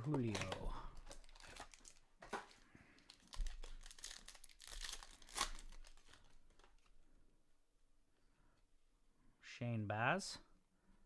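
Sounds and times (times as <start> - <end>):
card pack wrapper tearing and crinkling: 0.0 - 6.9.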